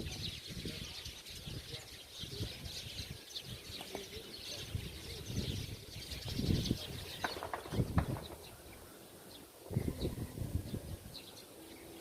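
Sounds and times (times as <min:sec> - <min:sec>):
small birds chirping: 0:00.0 - 0:12.0
low rumbling bumps on microphone: 0:06.3 - 0:08.6.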